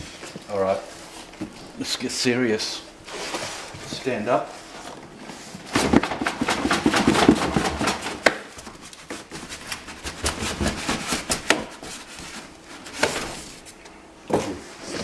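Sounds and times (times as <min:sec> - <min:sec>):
cardboard rustling and scraping: 0:03.0 - 0:13.8.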